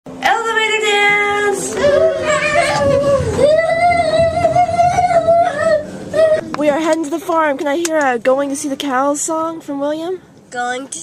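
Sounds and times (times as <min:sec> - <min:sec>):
high voice singing unaccompanied: 0:00.2 - 0:06.5.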